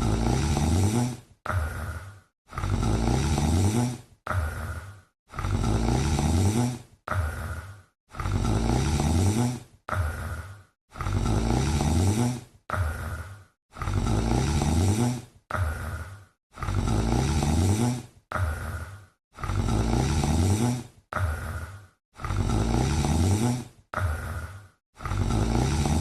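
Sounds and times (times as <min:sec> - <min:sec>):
cat snoring: 0:00.0 - 0:26.0.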